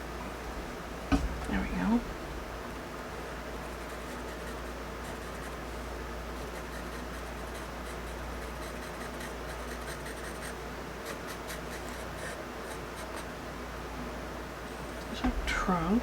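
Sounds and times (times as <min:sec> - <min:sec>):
steady low hum: 0:00.0 - 0:16.0
drawing tool scratching on paper: 0:03.7 - 0:13.3.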